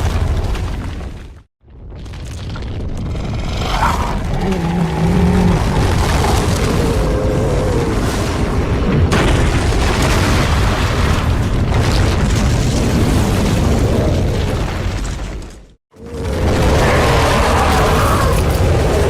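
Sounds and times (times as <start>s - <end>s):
wavering monster cry: 16.8s - 19.0s.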